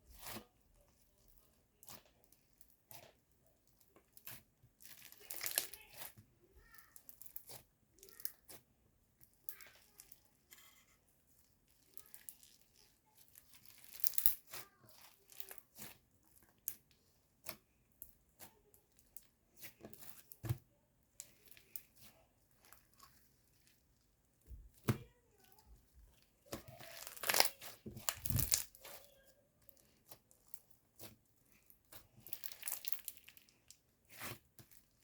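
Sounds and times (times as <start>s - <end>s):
crunchy slime crackling: 4.1s - 20.4s, 26.4s - 35.0s.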